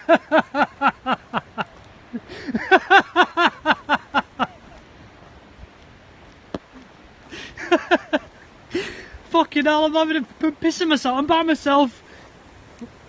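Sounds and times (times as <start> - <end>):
man laughing hysterically: 0.0 - 4.8, 7.3 - 9.0.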